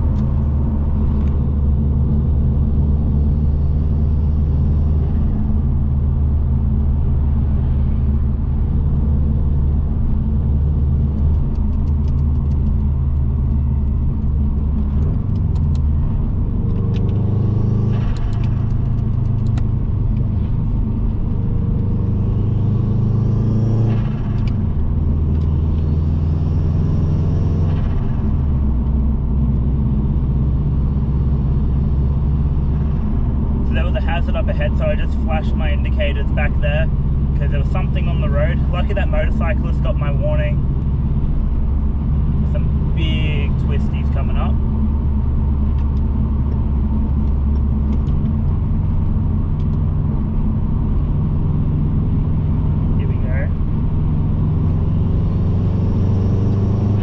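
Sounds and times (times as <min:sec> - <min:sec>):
car engine drone: 0:00.0 - 0:57.0.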